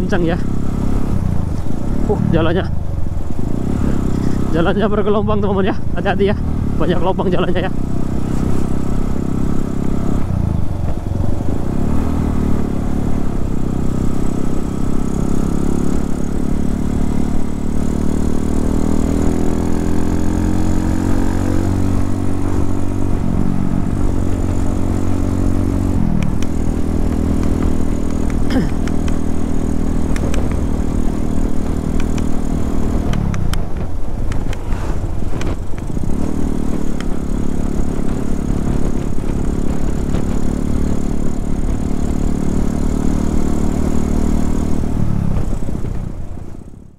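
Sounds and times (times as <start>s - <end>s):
motorcycle engine running: 0.0s - 46.9s
wind rumble on microphone: 20.8s - 40.8s, 44.3s - 46.9s.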